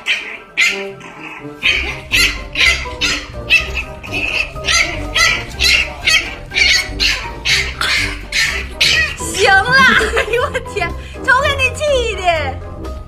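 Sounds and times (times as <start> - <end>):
dog barking: 0.0 - 9.5
background music with bass: 1.6 - 13.0.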